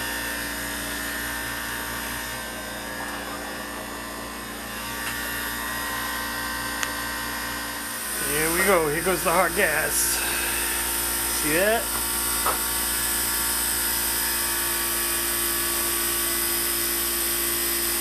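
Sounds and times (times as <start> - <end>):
ice machine humming: 0.0 - 18.0.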